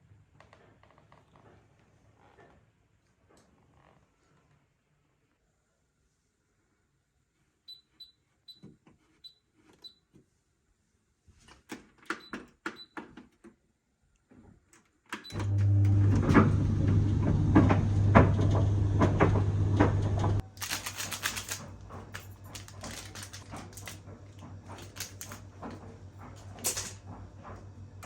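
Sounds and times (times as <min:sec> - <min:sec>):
electric appliance buzzing: 0:15.3 - 0:27.0.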